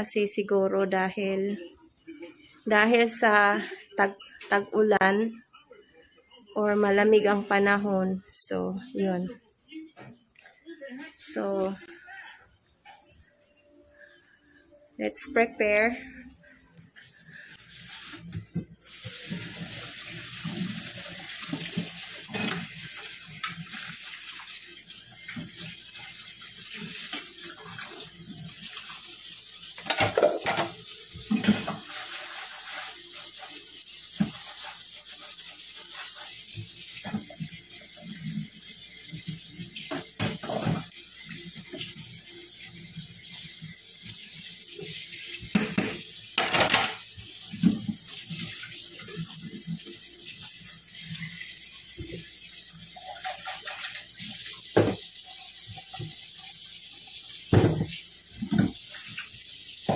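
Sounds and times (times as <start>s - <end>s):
tap running into sink: 54.7s - 55.1s, 57.5s - 58.9s.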